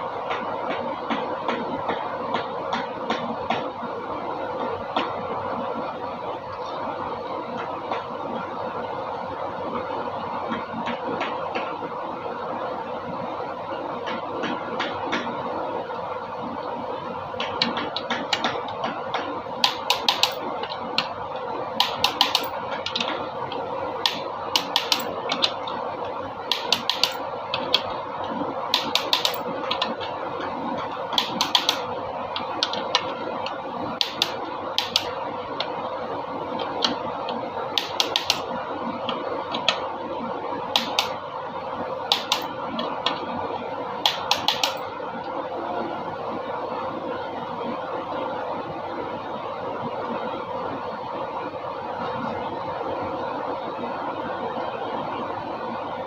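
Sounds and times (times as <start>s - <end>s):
steady hum: 0.0s - 56.0s
sharp metallic clicks of hand tools: 21.8s - 23.1s, 26.5s - 27.2s, 28.8s - 29.9s, 44.1s - 44.8s.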